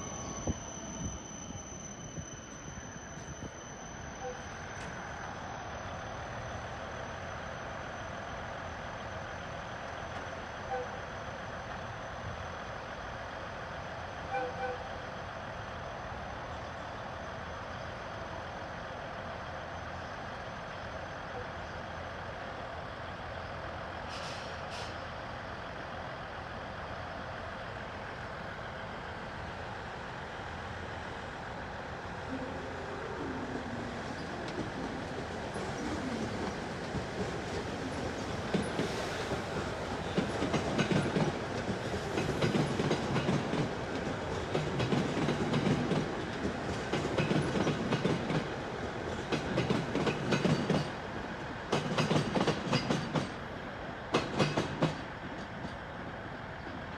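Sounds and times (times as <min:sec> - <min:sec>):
trains humming and rumbling: 0:00.0 - 0:56.9
hisses of air: 0:24.1 - 0:25.0.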